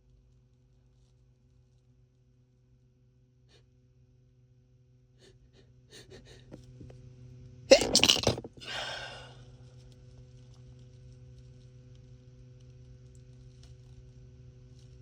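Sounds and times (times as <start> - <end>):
catching breaths: 5.2 - 6.9, 8.6 - 9.5
man sneezing: 7.7 - 9.4.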